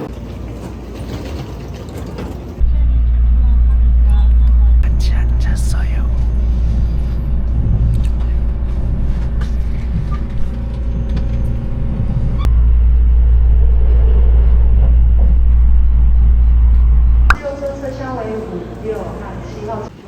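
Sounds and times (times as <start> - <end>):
vehicle rumble: 2.6 - 17.4.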